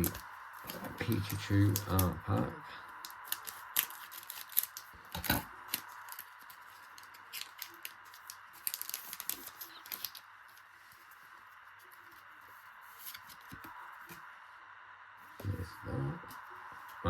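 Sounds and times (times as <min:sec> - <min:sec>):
foil pack crinkling and ripping: 0:00.0 - 0:11.2
cards clicking: 0:03.0 - 0:10.6.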